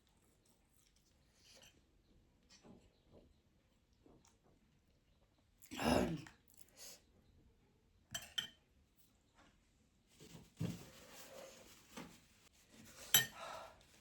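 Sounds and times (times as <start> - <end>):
cutlery clinking on dishes: 8.1 - 8.7, 12.9 - 13.5.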